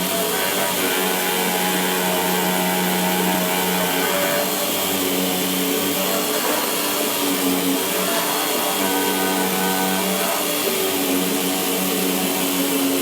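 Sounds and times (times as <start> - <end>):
cutting machine whirring: 0.0 - 13.0.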